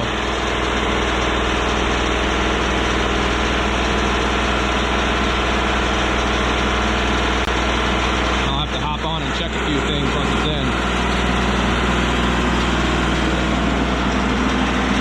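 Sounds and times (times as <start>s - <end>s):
small diesel engine running: 0.0s - 15.0s.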